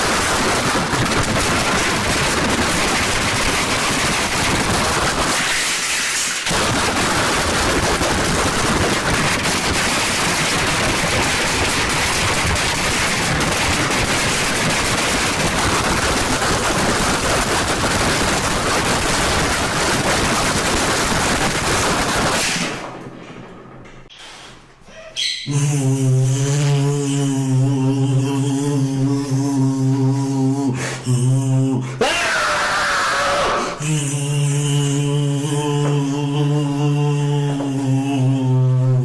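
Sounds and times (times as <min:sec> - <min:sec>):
dense crackling rattle: 0:00.0 - 0:24.1.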